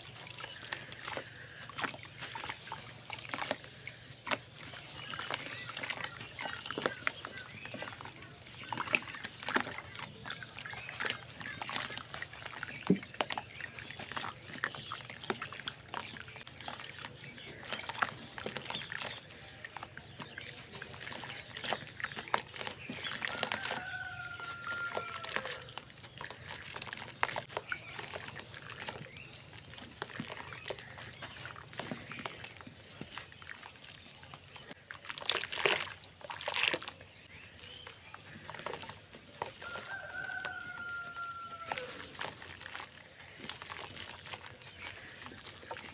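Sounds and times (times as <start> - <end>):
dried cement crumbling: 0.0 - 45.9
rooster crowing: 23.3 - 25.7, 39.6 - 42.2.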